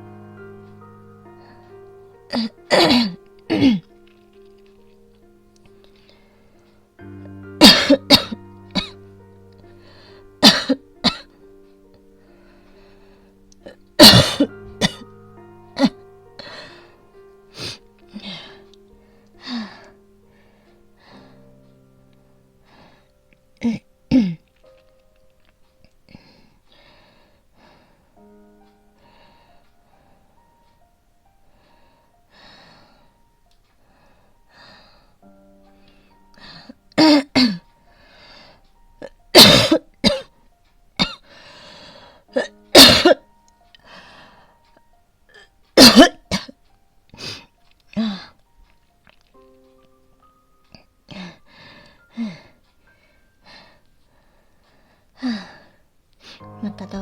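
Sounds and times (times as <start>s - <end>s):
soft background music: 0.0s - 57.0s
woman coughing: 2.3s - 3.9s, 7.6s - 8.9s, 10.4s - 11.2s, 14.0s - 15.0s, 37.0s - 37.6s, 39.4s - 40.3s, 42.4s - 43.2s, 45.8s - 46.5s
woman breathing: 5.8s - 6.8s, 9.6s - 10.4s, 12.2s - 13.6s, 16.4s - 21.6s, 26.1s - 28.2s, 31.4s - 36.8s, 37.9s - 38.8s, 41.2s - 42.4s, 43.8s - 45.6s, 50.7s - 57.0s.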